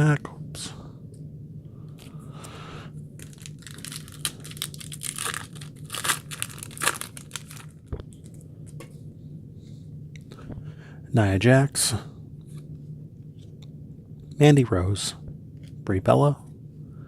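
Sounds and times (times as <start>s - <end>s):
wrapper tearing and crinkling: 3.2s - 8.4s.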